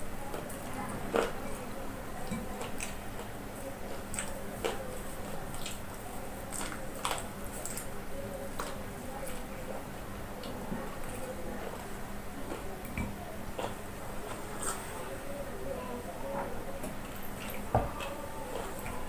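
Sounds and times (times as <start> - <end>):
faint steady hum: 0.0 - 19.0
person chewing food: 0.4 - 1.6, 2.3 - 14.8.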